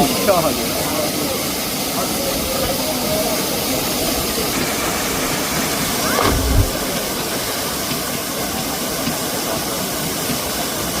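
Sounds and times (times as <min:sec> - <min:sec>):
waterfall roaring: 0:02.5 - 0:08.8
low thump: 0:06.0 - 0:07.8.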